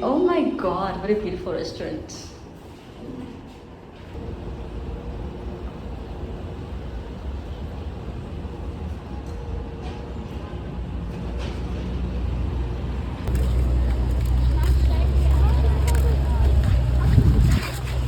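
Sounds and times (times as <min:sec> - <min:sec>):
boat engine rumbling: 0:11.8 - 0:18.0.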